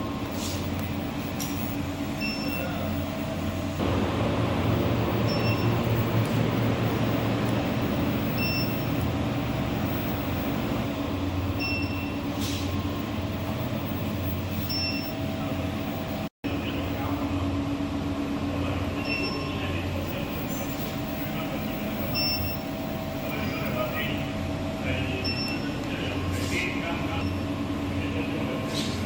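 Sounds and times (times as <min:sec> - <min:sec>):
furnace electrical hum: 0:00.0 - 0:29.0
short high-pitched beep: 0:05.2 - 0:05.8, 0:08.3 - 0:08.9, 0:11.6 - 0:12.2, 0:14.2 - 0:15.2, 0:22.1 - 0:22.6.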